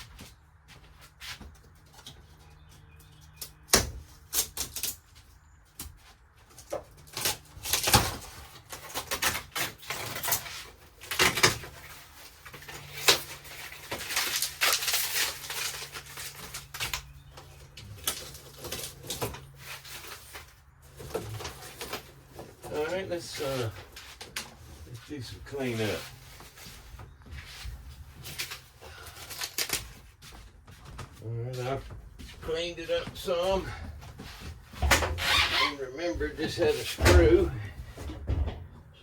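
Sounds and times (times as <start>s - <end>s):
wall paneling being pried and broken: 3.4s - 24.7s, 34.7s - 35.8s, 36.4s - 39.0s.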